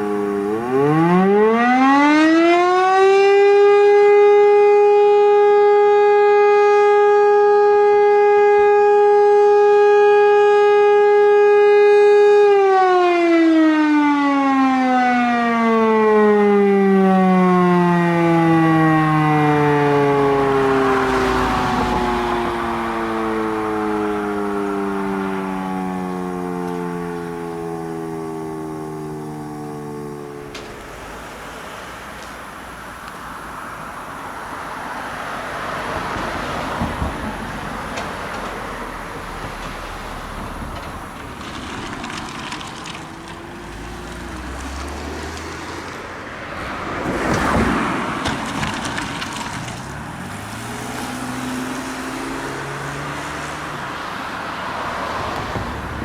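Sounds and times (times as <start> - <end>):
motor siren winding down: 0.0 - 31.4
vehicle driving past: 33.8 - 56.0.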